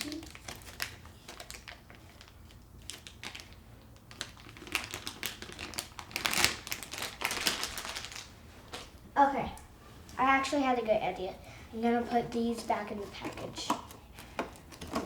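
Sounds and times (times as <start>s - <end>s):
plastic packaging rustling: 0.0s - 9.0s
plastic toys clicking and tapping: 13.1s - 15.0s.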